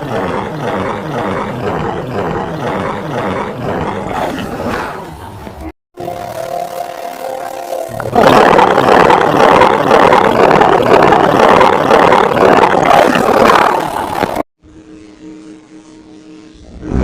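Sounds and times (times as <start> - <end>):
steady low hum: 0.0 - 17.0
harsh distorted noise: 6.0 - 14.4.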